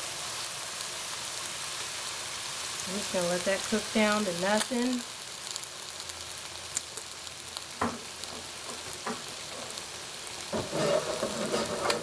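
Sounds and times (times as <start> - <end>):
wine sizzling in a hot pan: 0.0 - 12.0
utensil knocking against pan: 7.8 - 9.3.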